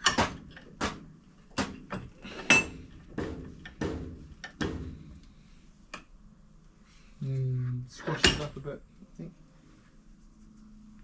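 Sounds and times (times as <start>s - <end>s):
metal tools clanking on workbench: 1.9s - 2.9s.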